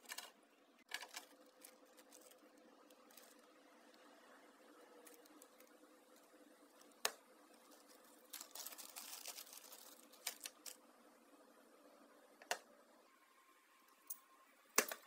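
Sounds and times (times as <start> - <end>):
scratchy rustle of small parts: 0.0 - 3.6, 5.0 - 10.8.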